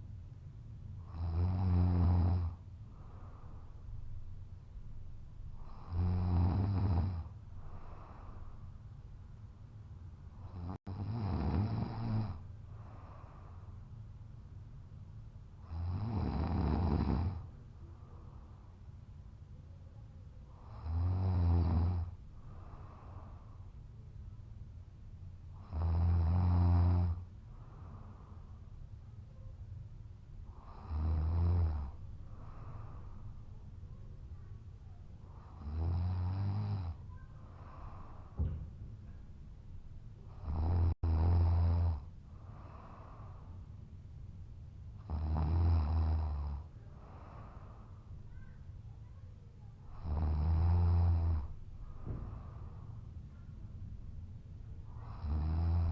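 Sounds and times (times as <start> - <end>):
quiet breathing: 0.0 - 55.9
man snoring heavily: 1.1 - 2.6, 5.7 - 7.3, 10.4 - 12.4, 15.7 - 17.4, 20.6 - 22.1, 25.6 - 27.2, 30.6 - 32.0, 35.5 - 37.0, 40.3 - 42.1, 45.0 - 46.7, 49.9 - 51.5, 55.0 - 55.9.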